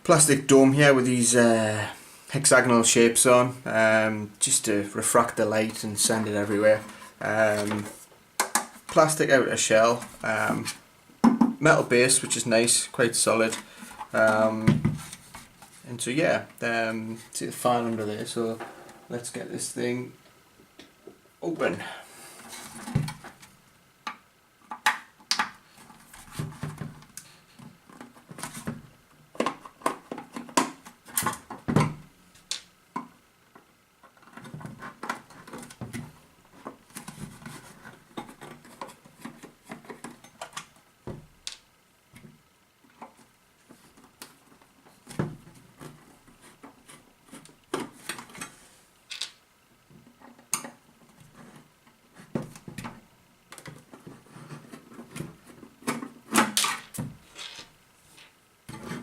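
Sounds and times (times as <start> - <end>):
plastic parts clicking and knocking: 7.6 - 9.0, 22.8 - 43.2, 49.1 - 51.3.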